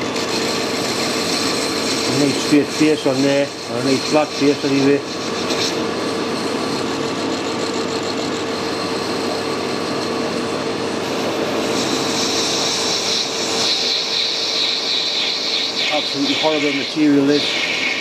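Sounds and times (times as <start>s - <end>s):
hiss of cutting tool: 0.0s - 6.0s, 11.0s - 18.0s
metal lathe running: 0.0s - 18.0s.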